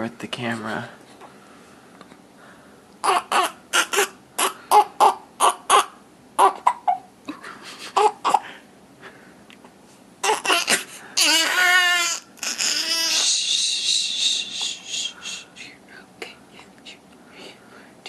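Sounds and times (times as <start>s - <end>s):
baby crying: 3.0s - 7.0s, 8.0s - 8.4s, 10.2s - 14.4s.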